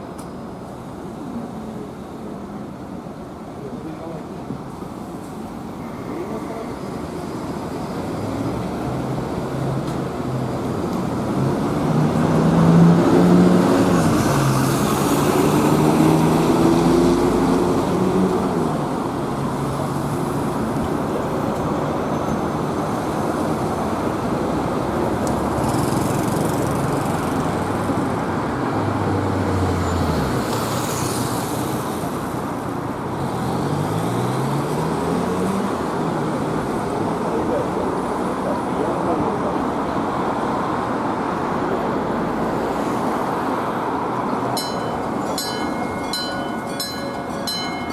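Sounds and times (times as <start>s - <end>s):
rumble of engines and tyres: 0.0s - 47.9s
louder engine passing: 11.7s - 18.7s.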